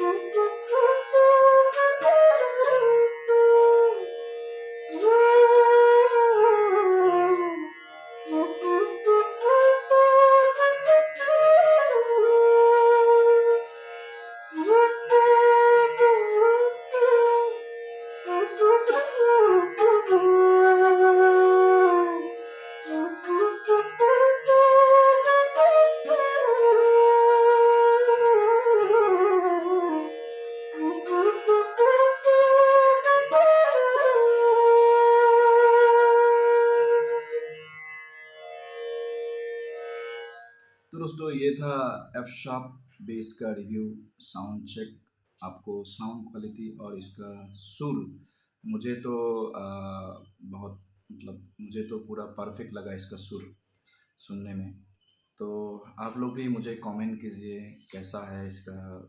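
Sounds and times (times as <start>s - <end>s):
bass bamboo flute melody: 0.0s - 37.9s, 45.4s - 48.1s, 55.4s - 59.0s.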